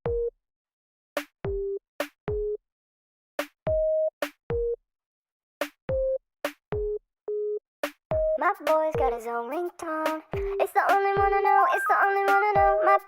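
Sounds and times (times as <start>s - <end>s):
drum machine kicks: 0.0s - 0.3s, 1.2s - 2.6s, 3.4s - 4.8s, 5.6s - 7.0s, 7.8s - 9.2s, 10.4s - 11.4s, 12.3s - 12.8s.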